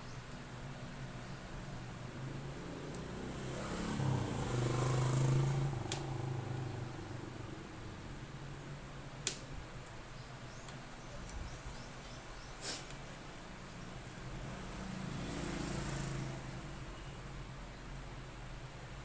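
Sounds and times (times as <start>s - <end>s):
vehicle engine passing: 2.0s - 8.4s, 14.2s - 16.9s.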